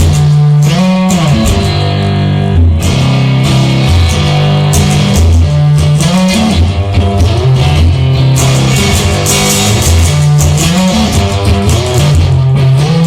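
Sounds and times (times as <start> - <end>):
instrumental rock music: 0.0 - 13.0.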